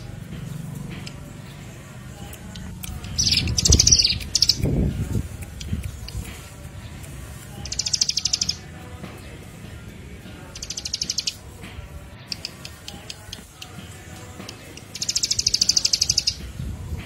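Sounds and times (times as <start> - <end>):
songbird chattering trills: 2.2 - 8.8, 10.4 - 11.5, 12.2 - 16.5.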